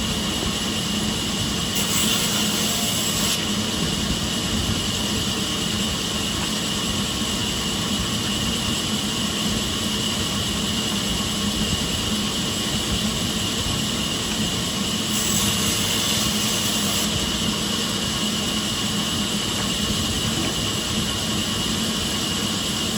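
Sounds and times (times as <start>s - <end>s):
sawmill machinery droning: 0.0s - 22.9s.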